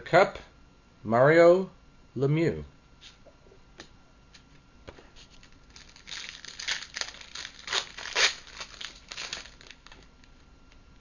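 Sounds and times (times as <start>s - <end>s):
card pack wrapper crinkling: 5.3s - 10.4s.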